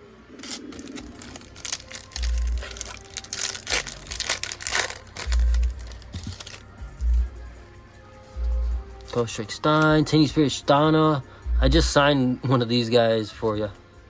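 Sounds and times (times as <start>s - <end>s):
foil wrapper crinkling and tearing: 0.4s - 6.7s.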